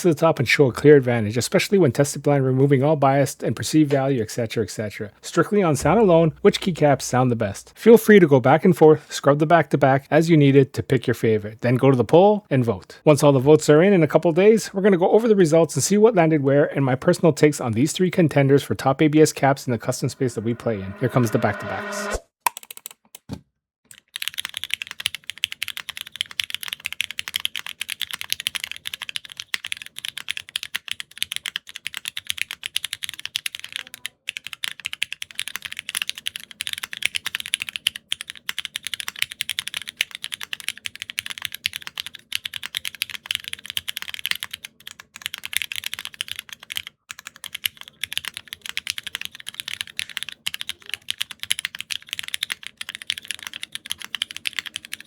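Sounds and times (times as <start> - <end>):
fast typing on mechanical keyboard: 23.9 - 55.0.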